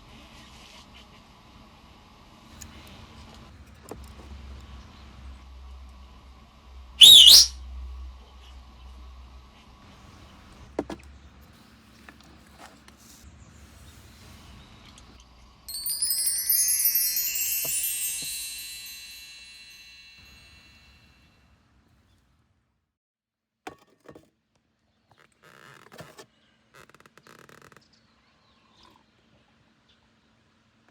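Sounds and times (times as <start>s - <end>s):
cascade of high chimes: 7.0s - 7.5s, 15.7s - 20.8s.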